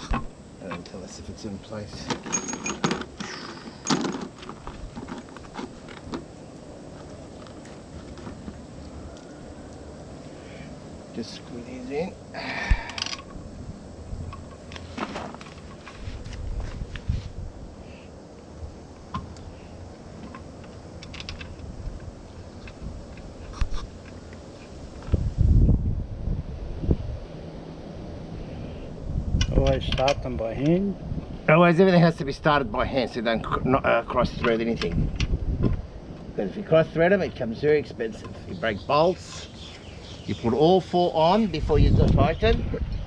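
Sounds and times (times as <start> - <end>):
metal parts knocking and clicking: 2.0 - 6.2, 21.0 - 21.6.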